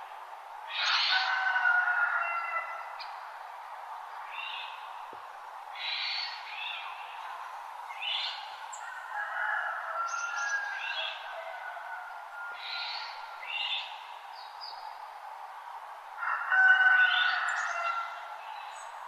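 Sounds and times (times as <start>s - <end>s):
songbirds singing: 4.1s - 9.0s, 12.6s - 15.8s, 17.0s - 19.0s.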